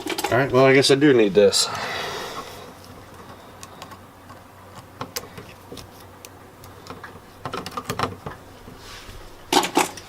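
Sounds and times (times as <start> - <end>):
clicks and taps of tools and wires: 3.1 - 8.4.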